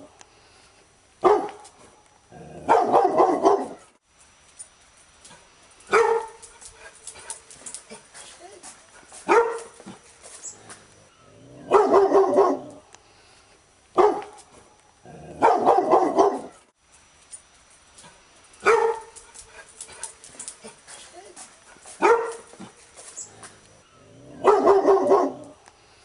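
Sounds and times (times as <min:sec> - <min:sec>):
dog barking: 0:01.2 - 0:01.6, 0:02.6 - 0:03.9, 0:05.9 - 0:06.4, 0:09.2 - 0:10.0, 0:11.6 - 0:12.8, 0:14.0 - 0:14.4, 0:15.4 - 0:16.6, 0:18.6 - 0:19.2, 0:22.0 - 0:22.7, 0:24.4 - 0:25.6.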